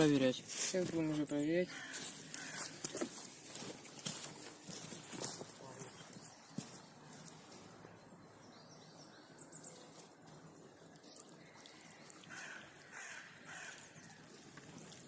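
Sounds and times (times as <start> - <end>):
quiet trickle of water: 10.2 - 15.0.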